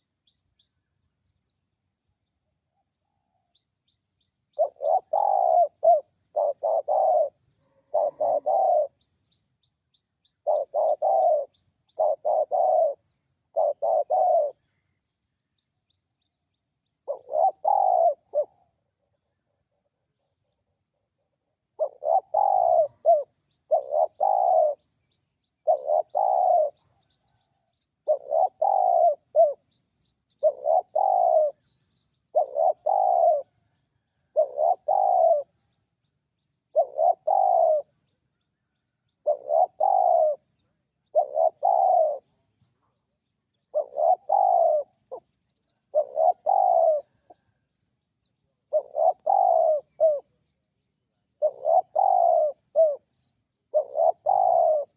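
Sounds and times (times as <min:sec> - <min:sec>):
dove cooing: 0:04.5 - 0:09.3, 0:10.3 - 0:14.8, 0:16.9 - 0:18.7, 0:21.7 - 0:25.0, 0:25.6 - 0:35.7, 0:36.7 - 0:38.0, 0:38.6 - 0:42.5, 0:43.5 - 0:47.7, 0:48.6 - 0:50.4, 0:51.1 - 0:54.9.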